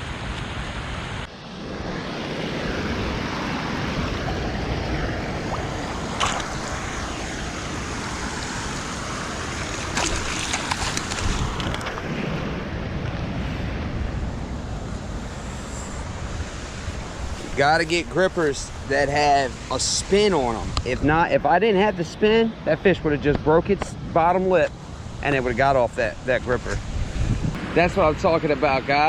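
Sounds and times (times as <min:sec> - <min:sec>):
wind buffeting microphone: 0:01.2 - 0:21.4, 0:22.9 - 0:28.5
floodwater rushing through rapid: 0:02.8 - 0:12.0.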